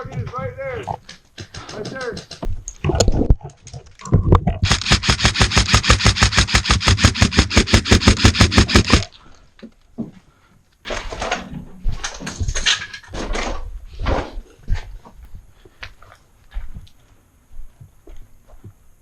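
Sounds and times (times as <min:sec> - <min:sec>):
airsoft gun full-auto burst: 0:04.6 - 0:09.1
soft irregular noises: 0:09.0 - 0:19.0.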